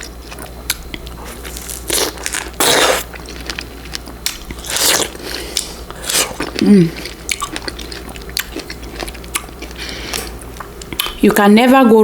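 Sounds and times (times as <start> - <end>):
chewing strawberries: 0.0 - 11.3.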